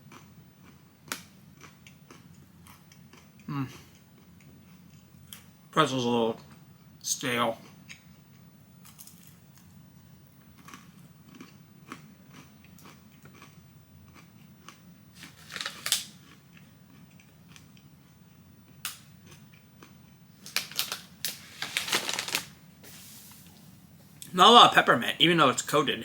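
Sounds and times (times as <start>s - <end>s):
chewing crunchy pretzel: 0.0s - 5.5s, 7.5s - 21.0s.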